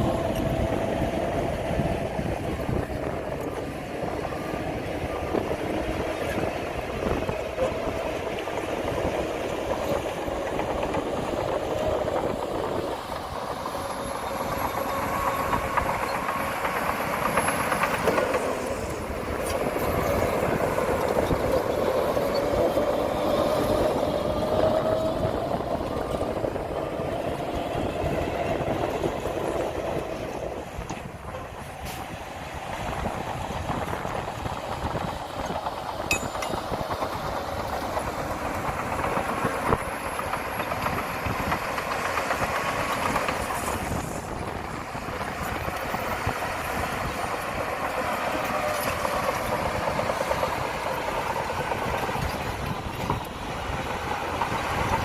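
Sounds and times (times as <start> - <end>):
bulldozer diesel engine under load: 0.0 - 55.0
steel tracks clattering: 0.0 - 55.0.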